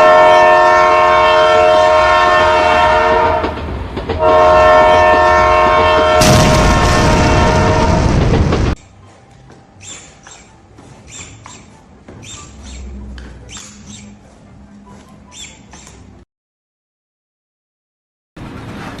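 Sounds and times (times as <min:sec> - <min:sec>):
horn blasts of held tones: 0:00.0 - 0:03.5, 0:04.2 - 0:06.3.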